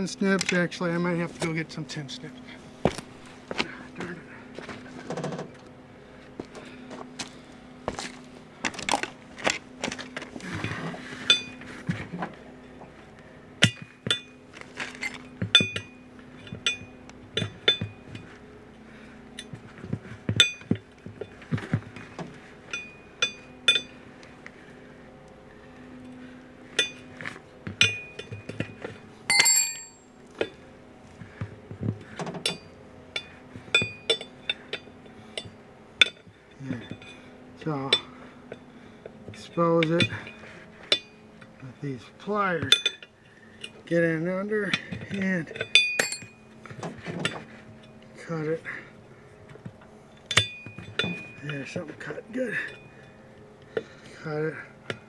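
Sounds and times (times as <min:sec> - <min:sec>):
metal hand tools clinking: 0:29.3 - 0:30.1, 0:45.5 - 0:46.4
loud ringing metal clang: 0:29.3 - 0:30.2, 0:45.6 - 0:46.5, 0:50.3 - 0:51.6.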